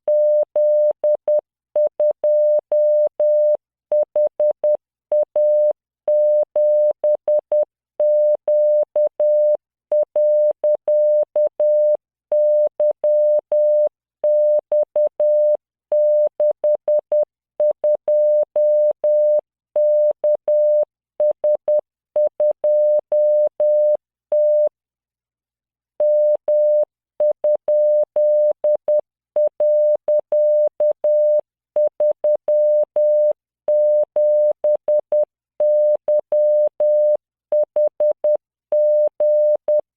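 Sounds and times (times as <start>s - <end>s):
morse code tone: 27.4s - 37.2s.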